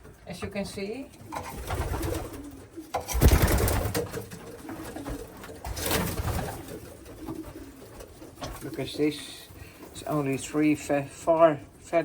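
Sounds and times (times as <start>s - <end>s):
pigeons cooing: 1.1s - 10.2s.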